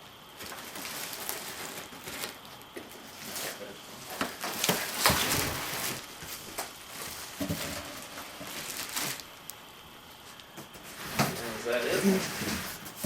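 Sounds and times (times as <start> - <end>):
cardboard box rustling and scraping: 10.8 - 13.0.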